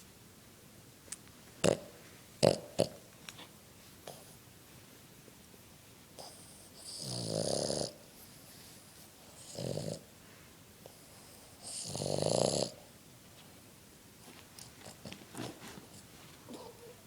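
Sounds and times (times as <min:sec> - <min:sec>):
dog snoring loudly: 0:01.6 - 0:03.0, 0:06.2 - 0:08.0, 0:09.4 - 0:10.1, 0:11.3 - 0:12.8.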